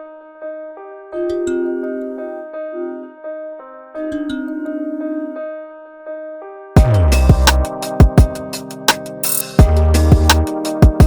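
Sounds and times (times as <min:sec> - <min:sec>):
soft keyboard notes: 0:01.1 - 0:05.6
beat with deep bass and drums: 0:06.8 - 0:11.0.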